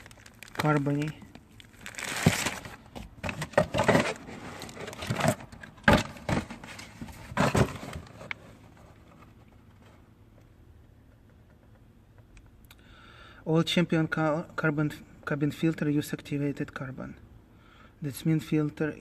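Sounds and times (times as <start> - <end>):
filter wrapping rustling: 0.0 - 10.0.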